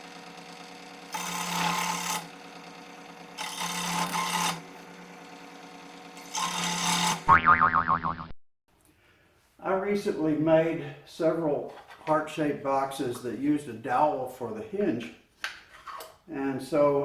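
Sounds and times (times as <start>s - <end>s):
band saw motor running: 0.0s - 7.2s
saw cutting wood dowel: 1.0s - 5.4s, 6.1s - 7.3s
cartoon boing sound effect: 7.3s - 8.3s.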